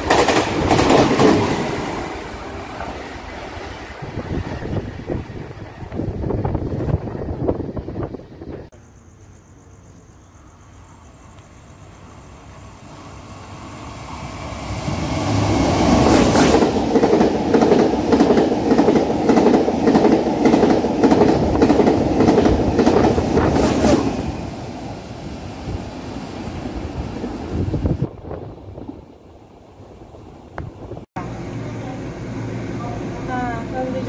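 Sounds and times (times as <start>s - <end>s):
train wheels clacking: 0.0s - 1.8s
train rushing past: 0.0s - 8.7s, 11.9s - 34.0s.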